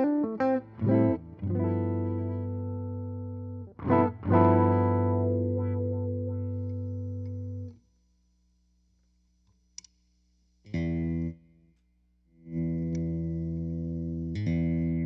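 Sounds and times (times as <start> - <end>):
electric bass notes plucked: 0.0 - 7.8, 12.5 - 15.0
small click: 9.4 - 10.0, 12.8 - 13.2.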